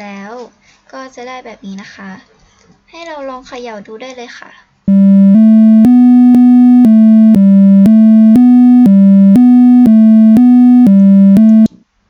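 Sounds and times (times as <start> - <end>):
buzzy electronic alarm melody: 4.9 - 11.7.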